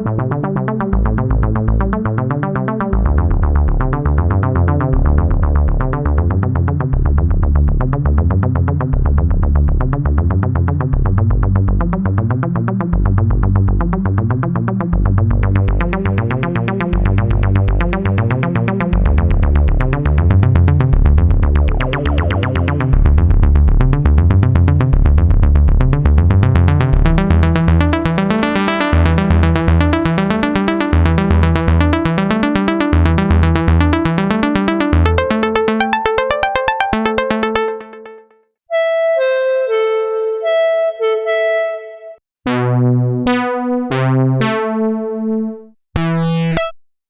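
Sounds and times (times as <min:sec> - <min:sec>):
pulsing synth bass line: 0:00.0 - 0:38.3, 0:42.5 - 0:45.3, 0:46.0 - 0:46.8
fast repeating synth notes: 0:27.1 - 0:38.3, 0:46.0 - 0:46.8.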